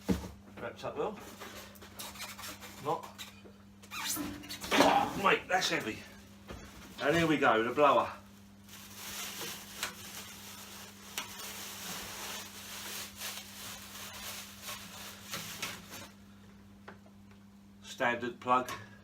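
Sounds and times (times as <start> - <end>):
packaging rustling and crinkling: 6.6 - 16.2.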